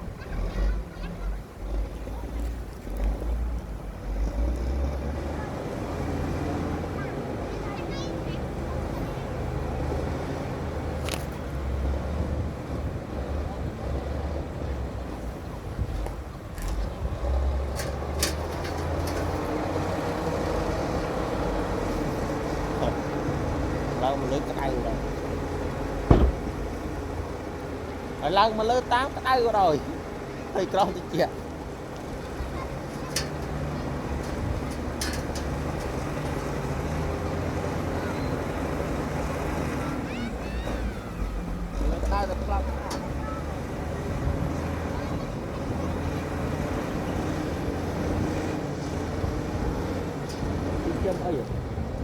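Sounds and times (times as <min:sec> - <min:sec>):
bulldozer engine rumbling: 0:00.0 - 0:52.0
metallic clanks: 0:16.5 - 0:20.0, 0:25.9 - 0:27.0, 0:32.9 - 0:37.3.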